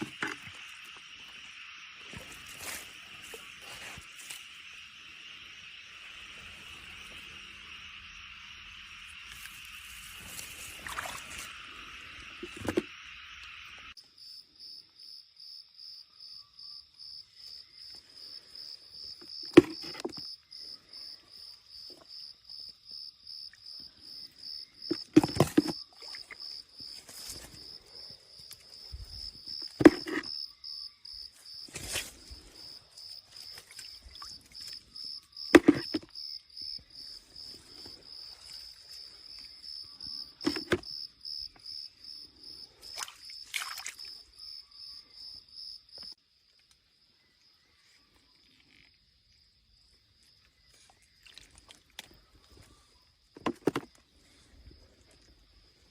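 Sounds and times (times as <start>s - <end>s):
insect chirping in high pulses: 0.0s - 19.6s.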